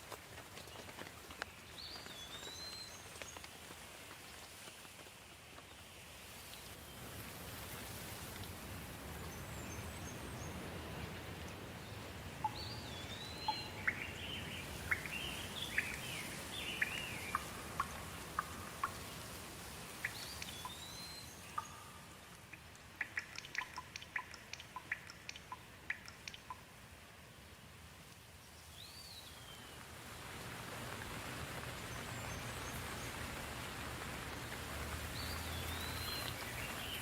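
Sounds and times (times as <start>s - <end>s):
steady rain: 0.0s - 37.0s
water drips ticking: 8.0s - 27.0s, 30.4s - 37.0s
birds chirping and whistling: 12.5s - 18.5s.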